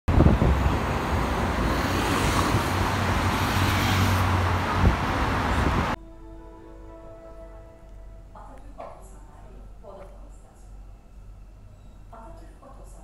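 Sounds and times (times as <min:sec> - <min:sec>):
traffic rumble: 0:00.1 - 0:06.0.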